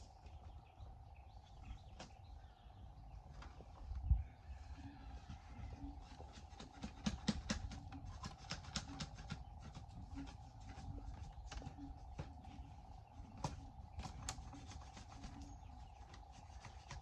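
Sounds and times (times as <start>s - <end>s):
faint steady hum: 0.0s - 17.0s
knocks and clicks on bamboo: 6.3s - 10.4s.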